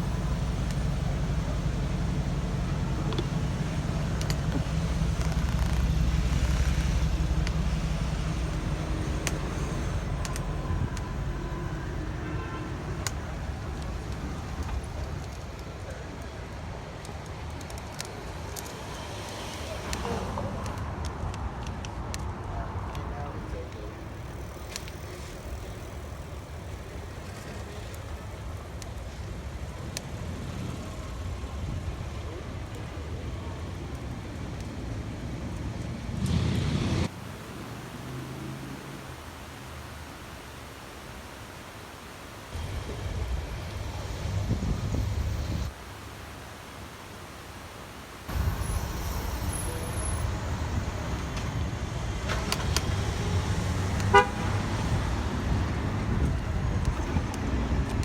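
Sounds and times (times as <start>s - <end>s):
wind buffeting microphone: 42.5s - 45.7s.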